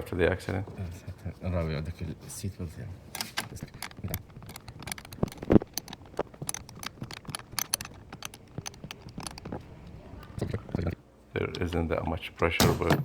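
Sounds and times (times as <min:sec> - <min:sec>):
small metallic clicks and taps: 0:03.2 - 0:10.5.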